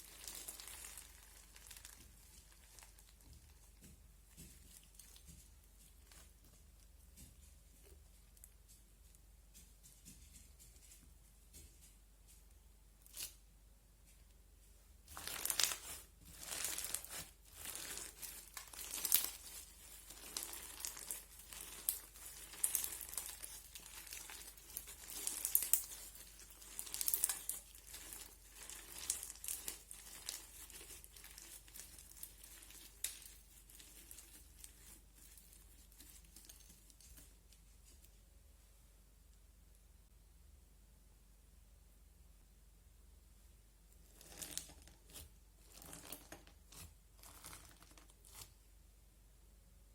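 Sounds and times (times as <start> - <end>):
crunchy slime crackling: 0.0 - 6.5, 15.0 - 37.4, 44.0 - 48.6.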